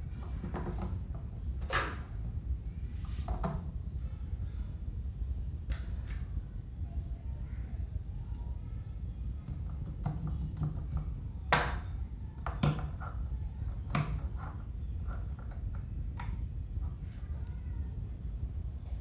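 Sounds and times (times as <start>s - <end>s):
steady low hum: 0.0s - 19.0s
metal fan parts clinking: 8.2s - 17.6s.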